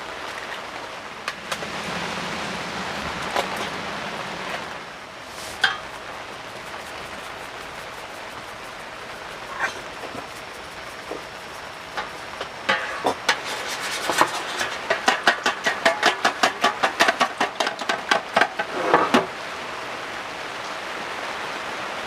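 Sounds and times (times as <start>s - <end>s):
steady hiss: 0.0s - 22.0s
rapid sharp knocks: 11.9s - 18.7s.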